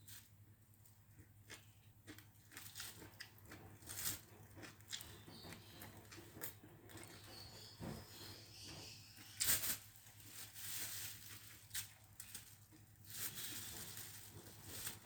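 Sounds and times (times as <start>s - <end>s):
person chewing noodles: 1.1s - 7.4s.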